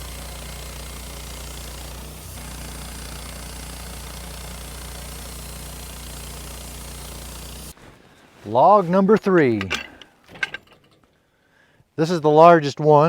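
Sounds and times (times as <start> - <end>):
sawmill engine running: 0.0 - 7.8.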